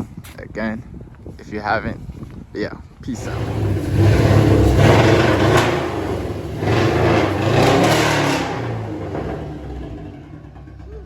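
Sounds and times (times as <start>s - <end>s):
car engine revving: 3.2s - 11.0s.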